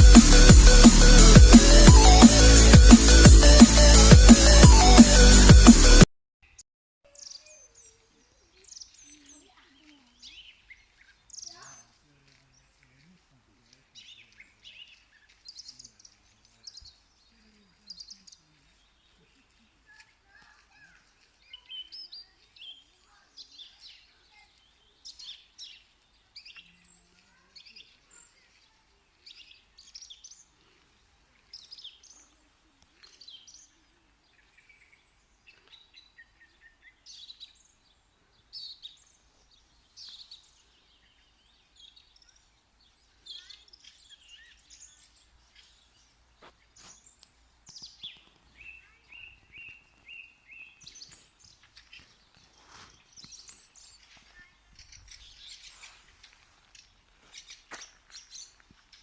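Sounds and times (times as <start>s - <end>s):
bird singing and chirping: 7.1s - 30.5s, 43.2s - 46.1s, 46.8s - 59.0s.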